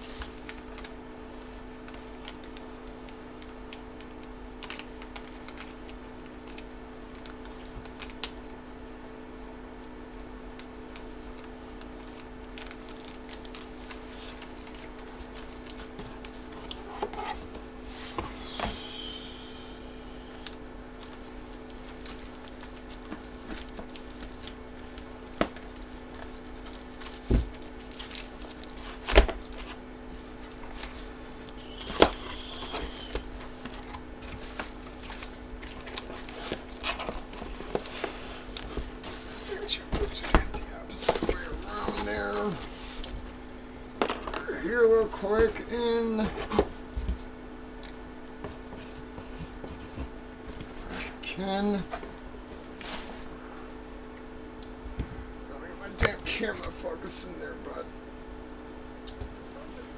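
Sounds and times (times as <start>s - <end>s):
comic books rustling in plastic bags: 0.0s - 8.6s, 10.2s - 19.4s, 20.4s - 43.3s, 43.9s - 47.3s, 48.5s - 53.4s
low hum: 16.8s - 22.6s.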